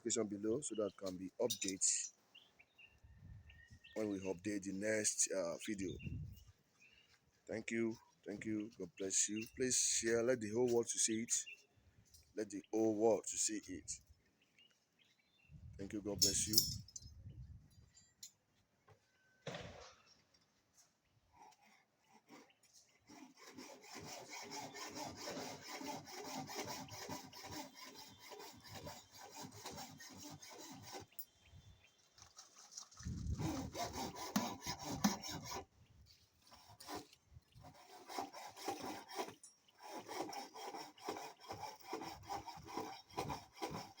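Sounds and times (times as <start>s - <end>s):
hand tool scraping hard surface: 33.3s - 35.6s.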